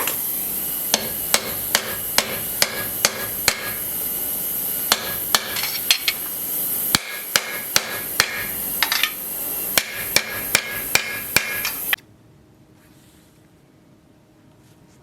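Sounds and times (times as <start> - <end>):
steady hiss: 0.0 - 12.0
hammer tapping on metal: 0.9 - 3.7, 4.9 - 6.0, 7.0 - 9.1, 9.8 - 11.8.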